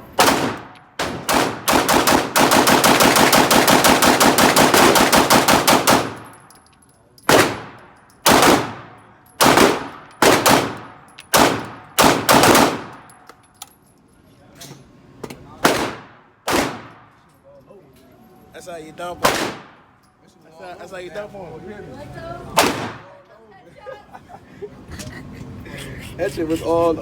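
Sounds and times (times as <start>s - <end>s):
pistol shots with echo: 0.2s - 6.4s, 7.3s - 13.1s, 15.6s - 17.1s, 19.2s - 19.9s, 22.6s - 23.1s.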